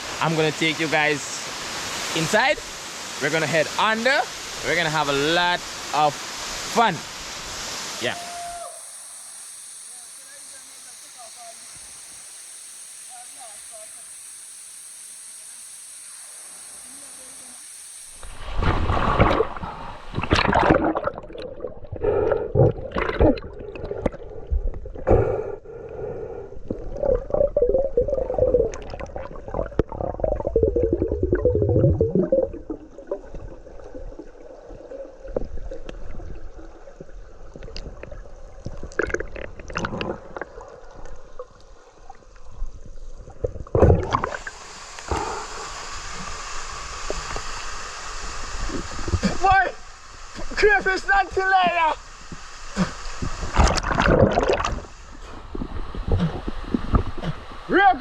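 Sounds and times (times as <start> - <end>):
rush of falling water: 0.0 - 20.8, 44.0 - 58.0
underwater gurgling and sloshing: 18.0 - 50.6, 52.0 - 57.7.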